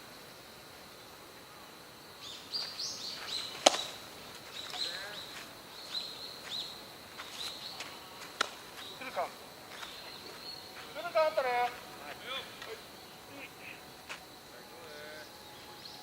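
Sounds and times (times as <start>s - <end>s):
small birds chirping: 0.0s - 16.0s
sharp crack: 3.5s - 4.0s, 8.2s - 8.7s.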